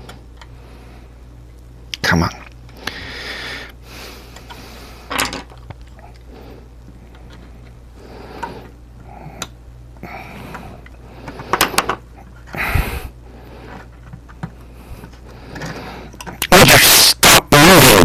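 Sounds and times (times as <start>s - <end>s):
steady low hum: 0.0s - 18.0s
rustling and scraping objects: 10.4s - 17.0s.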